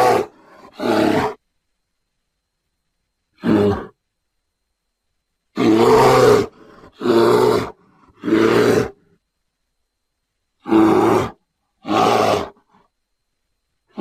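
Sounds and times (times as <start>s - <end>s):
grizzly bear roaring: 0.0s - 1.4s, 3.4s - 4.0s, 5.5s - 9.1s, 10.6s - 12.7s.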